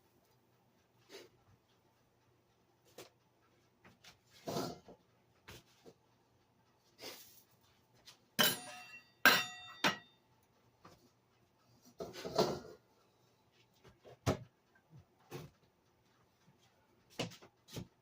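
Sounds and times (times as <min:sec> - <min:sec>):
metal kitchenware clanking: 0:08.4 - 0:10.1.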